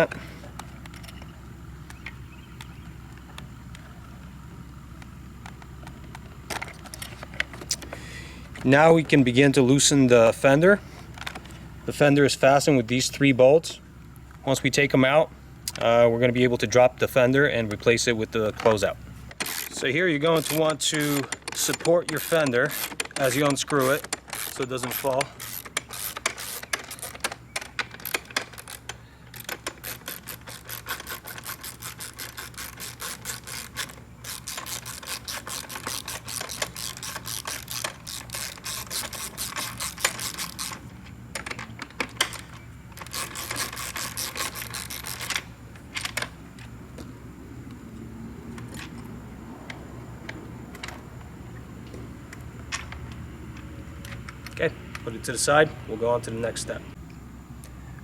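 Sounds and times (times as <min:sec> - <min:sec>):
faint hum: 0:00.0 - 0:58.0
ratchet wrench clicking: 0:19.3 - 0:46.3.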